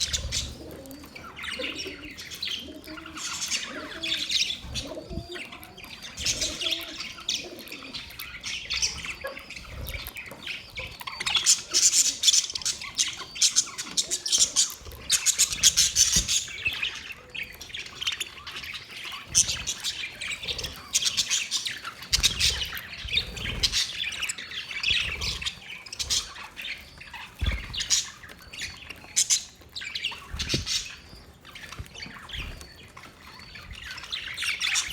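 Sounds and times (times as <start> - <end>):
parrots chirping and squawking: 0.0 - 34.9.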